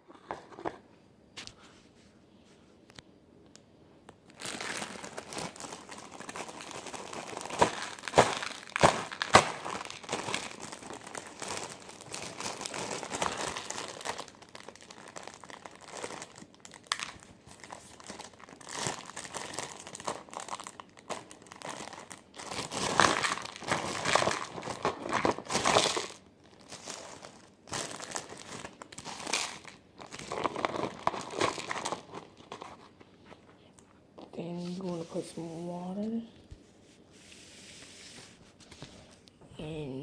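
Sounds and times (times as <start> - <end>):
plastic wrapper rustling: 4.2 - 33.4
dry noodles crunching: 4.3 - 32.7.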